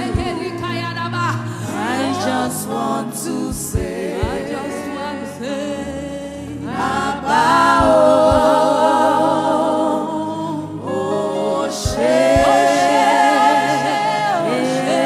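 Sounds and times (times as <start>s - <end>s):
gospel choir singing: 0.0s - 15.0s
low thumps: 3.5s - 4.6s, 7.7s - 9.0s.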